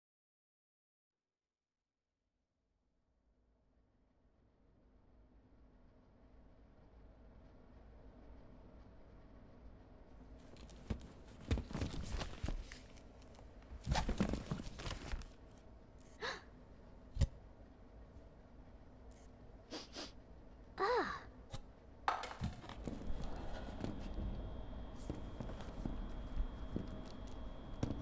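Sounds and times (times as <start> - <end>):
person sighing and breathing out: 16.1 - 16.6, 20.8 - 21.3.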